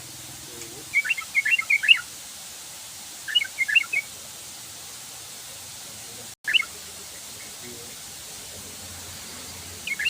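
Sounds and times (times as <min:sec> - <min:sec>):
bulbul singing: 0:00.0 - 0:02.2, 0:03.2 - 0:04.2, 0:06.4 - 0:10.0.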